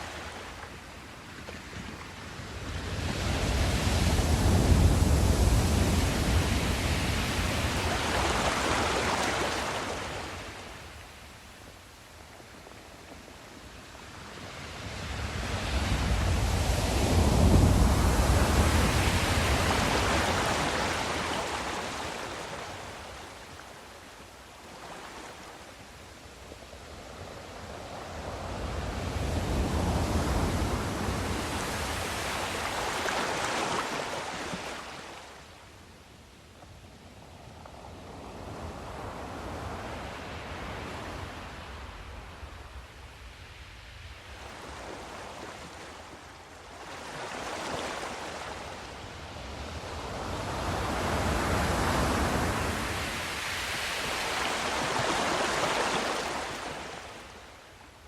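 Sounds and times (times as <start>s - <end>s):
ocean waves: 0.0s - 35.7s, 37.5s - 58.0s.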